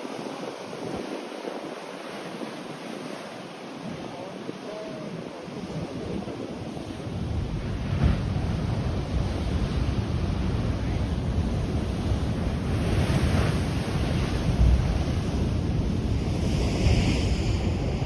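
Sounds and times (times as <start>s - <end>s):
surf washing over rocks: 0.0s - 18.0s
wind buffeting microphone: 3.8s - 18.0s.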